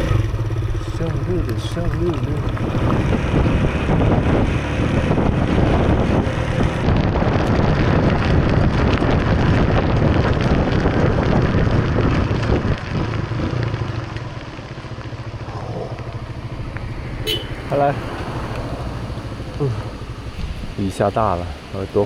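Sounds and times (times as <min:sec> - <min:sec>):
motorcycle engine running: 0:00.0 - 0:21.7
wind buffeting microphone: 0:00.0 - 0:22.0.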